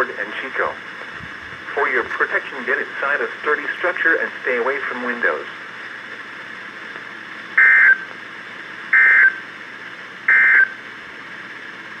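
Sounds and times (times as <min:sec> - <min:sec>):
radio hiss: 0:00.0 - 0:12.0
buzzy digital data tones: 0:07.6 - 0:08.1, 0:08.9 - 0:09.4, 0:10.3 - 0:10.7.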